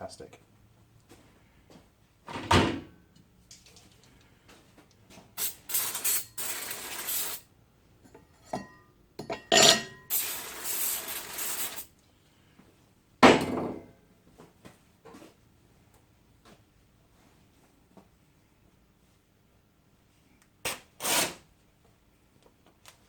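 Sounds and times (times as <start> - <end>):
aerosol spray hissing: 5.4 - 7.4, 10.1 - 11.9.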